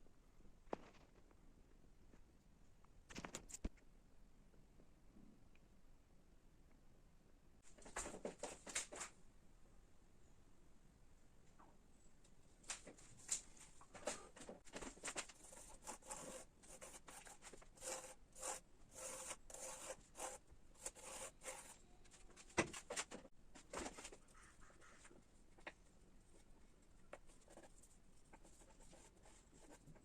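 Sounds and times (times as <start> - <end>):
hand tool scraping wood: 15.3 - 21.9.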